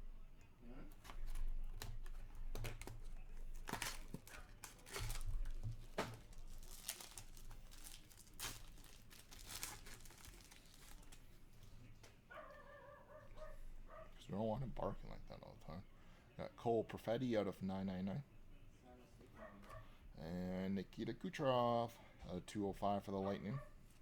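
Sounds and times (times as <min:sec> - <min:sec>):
wrappers tearing and crinkling: 0:01.0 - 0:11.4.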